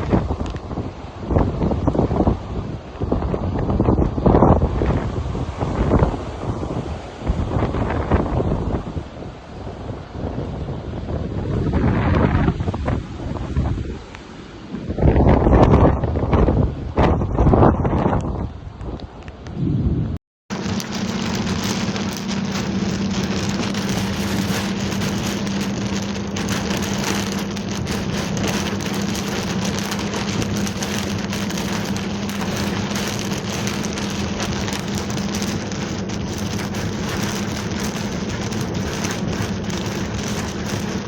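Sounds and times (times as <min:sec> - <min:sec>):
heavy rain pouring: 0:00.0 - 0:10.7, 0:20.5 - 0:41.0.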